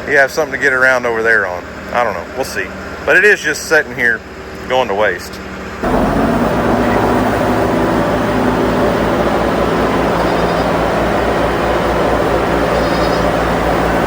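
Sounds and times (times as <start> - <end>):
vehicle engine running: 5.8 - 14.0.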